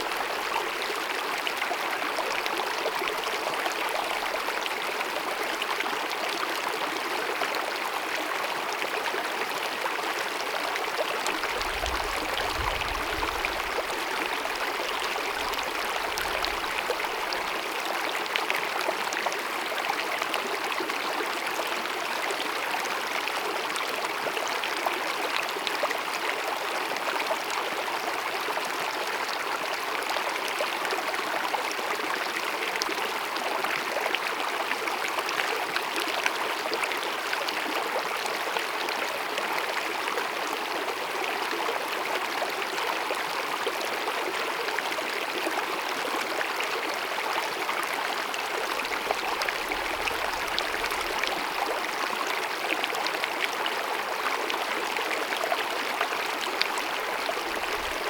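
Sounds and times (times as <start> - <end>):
stream babbling over rocks: 0.0 - 27.6, 31.8 - 58.0.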